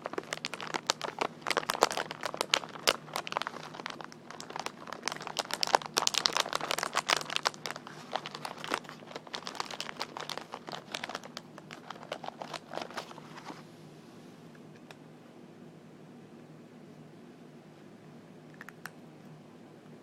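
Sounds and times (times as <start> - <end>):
fingers crinkling wrapping: 0.0 - 13.5
faint low hum: 0.0 - 20.0.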